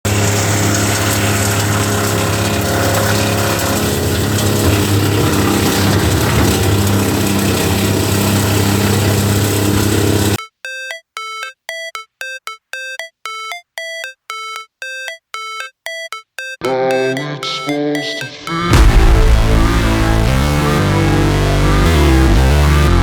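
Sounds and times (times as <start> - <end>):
wood chipper running: 0.1 - 10.4.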